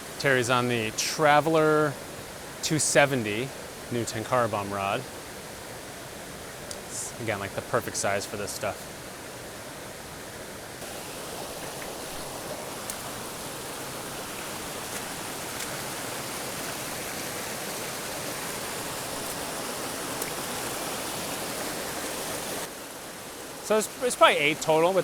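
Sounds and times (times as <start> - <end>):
creek water rushing: 0.0 - 25.0
faint ticks: 11.6 - 13.1.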